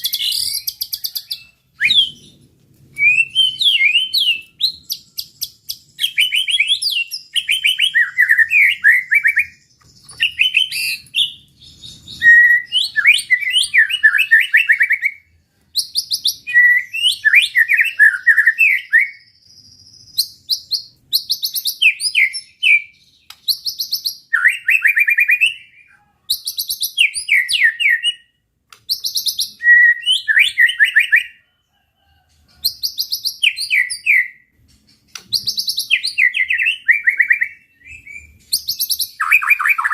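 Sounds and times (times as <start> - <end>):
songbird singing rapid phrases: 0.0 - 31.4, 32.6 - 39.9.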